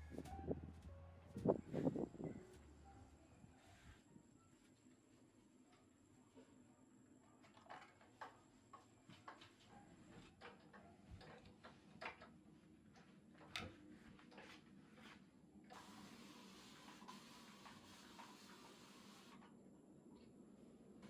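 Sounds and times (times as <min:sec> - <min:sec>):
faint clicks and light taps: 0:10.4 - 0:15.2.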